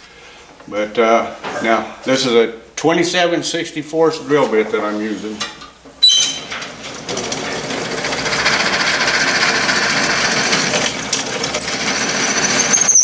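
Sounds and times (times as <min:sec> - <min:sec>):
drill press motor hum: 0:06.7 - 0:13.0
drill bit grinding into wood: 0:07.6 - 0:13.0.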